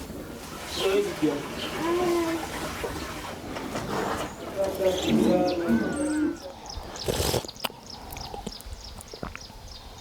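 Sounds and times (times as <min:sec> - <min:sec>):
small birds chirping: 0:04.1 - 0:10.0.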